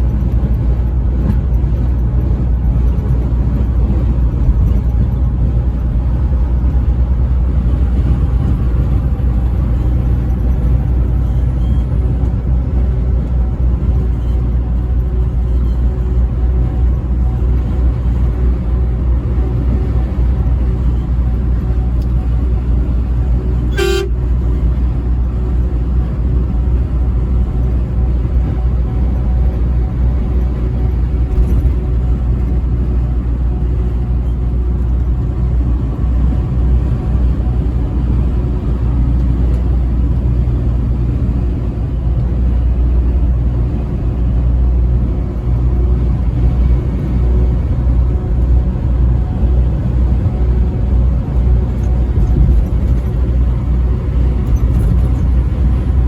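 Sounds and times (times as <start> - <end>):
road rumble: 0.0 - 56.0
truck engine drone: 0.0 - 56.0
brief tone: 11.2 - 12.1, 14.1 - 14.4, 23.7 - 24.2.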